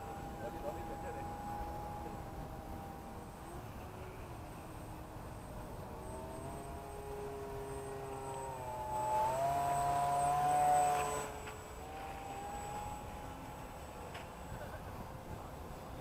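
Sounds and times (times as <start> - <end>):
model jet motor whining: 0.0 - 16.0.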